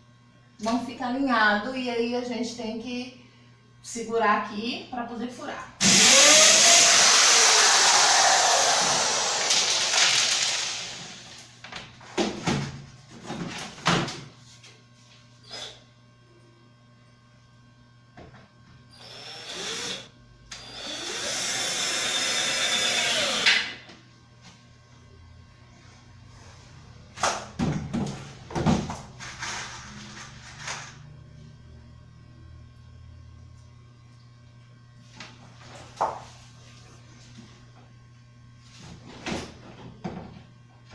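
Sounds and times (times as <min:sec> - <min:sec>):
electric drill boring into wood: 0:05.8 - 0:11.5, 0:19.0 - 0:23.8
knocks and thuds on workbench: 0:27.6 - 0:29.0.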